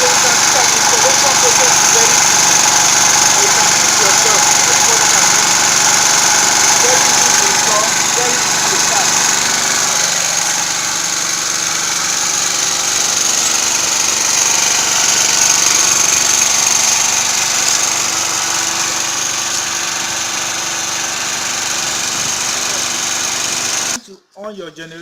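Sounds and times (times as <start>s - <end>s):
generator engine running: 0.0s - 24.0s.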